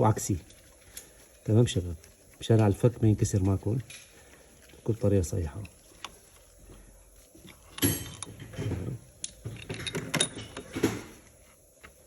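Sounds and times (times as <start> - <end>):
metal tools clinking and rattling: 7.7 - 11.0.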